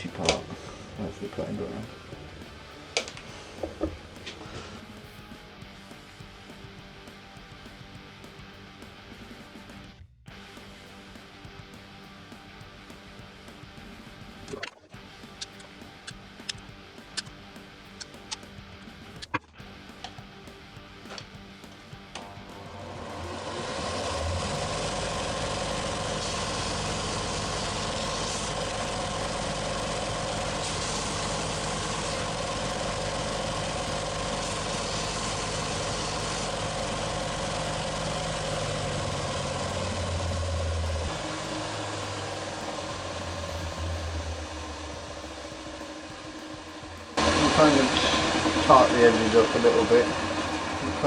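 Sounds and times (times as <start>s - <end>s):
small electric motor humming: 15.1s - 51.0s.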